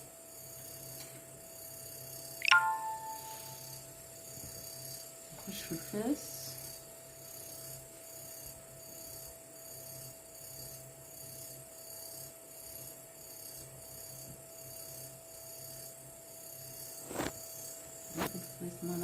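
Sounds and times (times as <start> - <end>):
faint background hum: 0.0 - 19.0
thin steady whine: 2.4 - 10.5.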